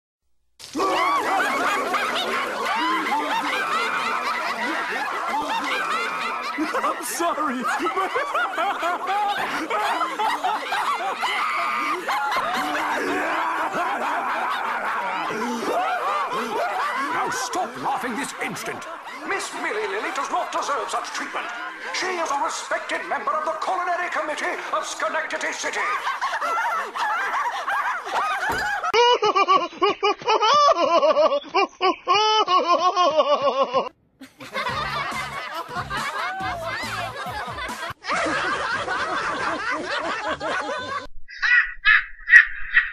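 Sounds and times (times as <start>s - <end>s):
cartoon voices laughing: 0.6s - 42.9s.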